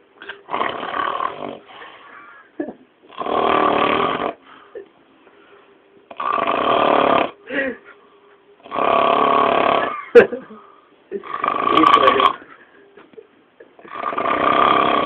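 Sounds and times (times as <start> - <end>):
man snoring loudly: 0.5 - 1.7, 3.1 - 4.4, 6.1 - 7.4, 8.6 - 10.1, 11.2 - 12.4, 13.8 - 15.0
quiet breathing: 1.2 - 2.6, 4.4 - 6.1, 7.3 - 8.7, 12.4 - 13.8.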